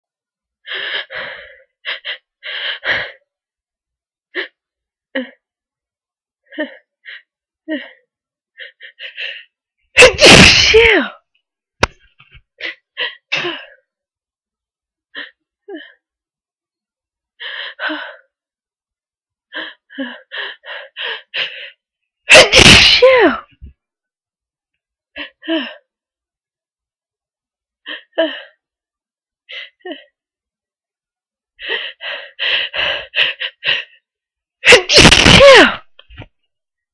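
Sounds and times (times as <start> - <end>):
person gasping before sneeze: 10.0 - 10.9, 22.3 - 23.3, 34.7 - 35.8.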